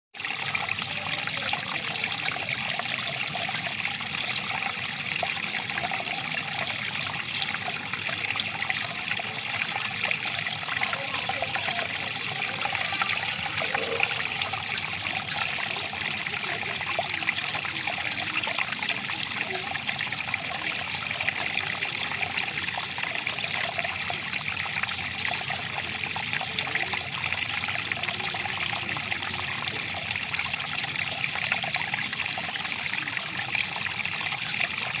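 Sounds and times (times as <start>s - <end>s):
water flowing and trickling: 0.2s - 35.0s
water splashing and bubbling: 0.4s - 25.7s.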